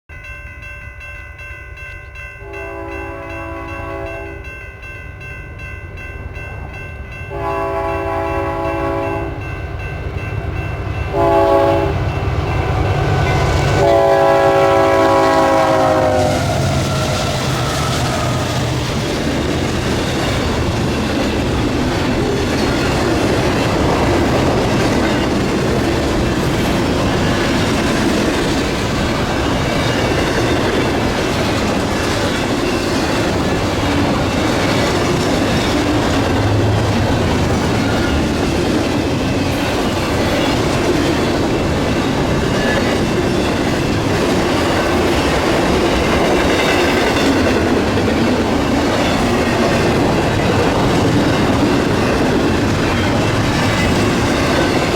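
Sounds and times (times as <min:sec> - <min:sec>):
train wheels rumbling on rail: 0:02.5 - 0:54.9
clickety-clack over rail joints: 0:16.0 - 0:54.9.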